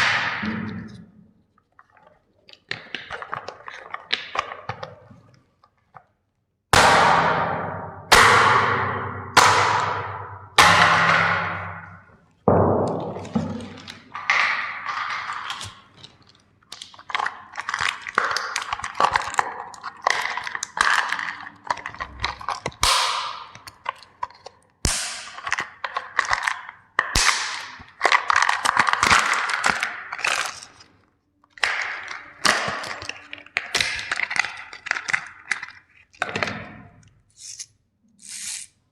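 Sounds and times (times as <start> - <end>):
plastic toys cracking and snapping: 2.6 - 5.0, 12.9 - 38.8.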